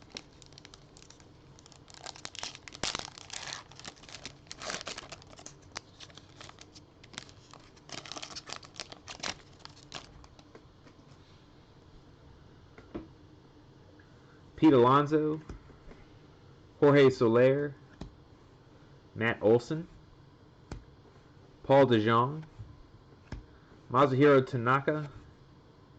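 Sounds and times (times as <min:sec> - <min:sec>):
plastic wrapper crinkling: 0:00.0 - 0:10.5.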